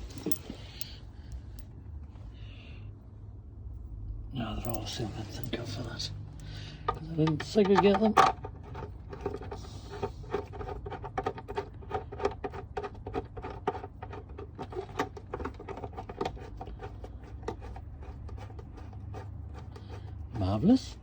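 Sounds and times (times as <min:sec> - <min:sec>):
metal bolts and hand tools clicking: 0:00.0 - 0:00.9.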